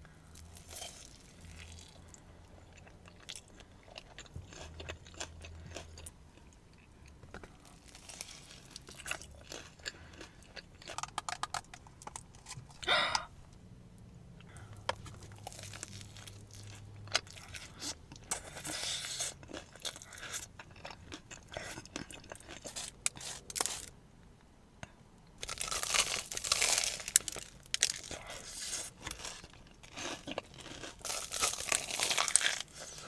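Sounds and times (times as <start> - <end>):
crunching on fried coating: 0.1 - 12.8, 14.4 - 24.0, 25.4 - 33.0
mouth chewing sounds: 0.4 - 13.2, 14.4 - 23.9.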